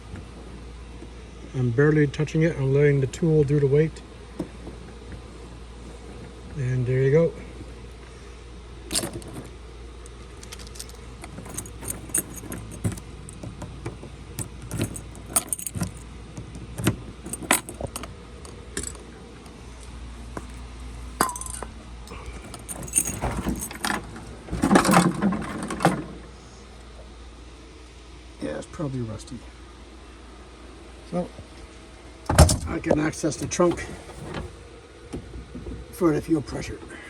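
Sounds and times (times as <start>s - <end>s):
car keys jangling at a lock: 8.9s - 19.6s, 20.3s - 26.1s, 32.3s - 34.5s.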